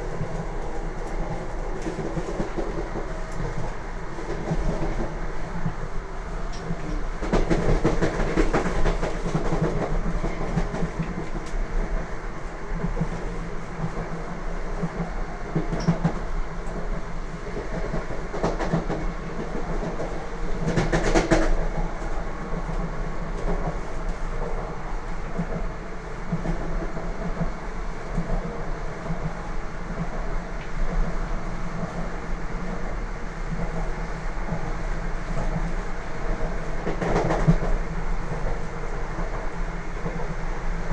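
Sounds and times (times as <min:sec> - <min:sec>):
train wheels rumbling on track: 0:00.0 - 0:40.9
clacks over rail joints: 0:06.5 - 0:11.6.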